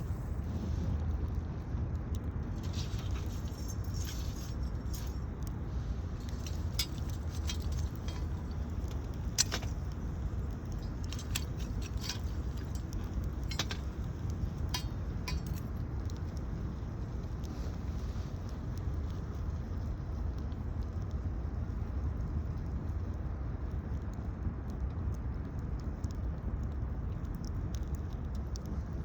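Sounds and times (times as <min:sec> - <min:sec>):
steady low rumble: 0:00.0 - 0:22.5
wood fire crackling: 0:00.0 - 0:29.0.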